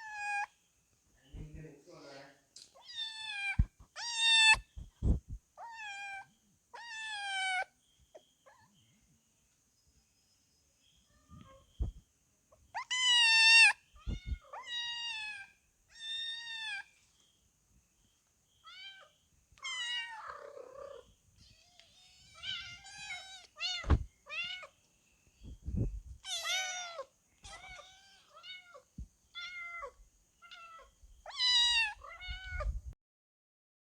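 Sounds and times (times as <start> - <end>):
kittens meowing: 2.8 - 7.7, 12.8 - 16.9, 18.6 - 24.8, 26.2 - 32.8
dull thumps: 4.6 - 5.4, 23.8 - 24.1.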